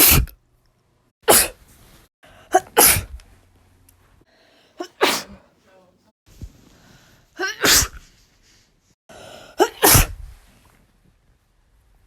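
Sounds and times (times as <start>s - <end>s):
person sneezing: 0.0s - 0.3s, 1.3s - 1.6s, 2.5s - 3.2s, 4.8s - 5.5s, 7.4s - 8.2s, 9.5s - 10.2s.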